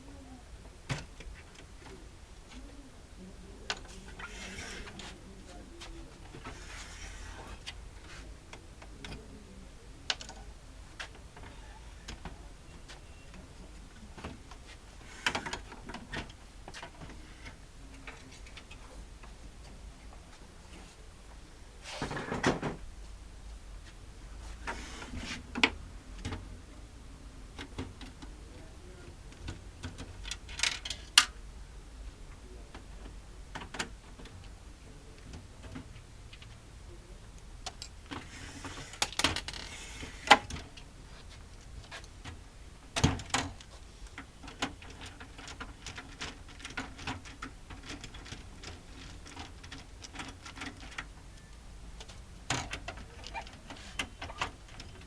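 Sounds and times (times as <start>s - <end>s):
small hard parts clicking and knocking: 29.3s - 31.3s, 37.6s - 40.8s, 43.0s - 51.3s, 52.0s - 55.0s.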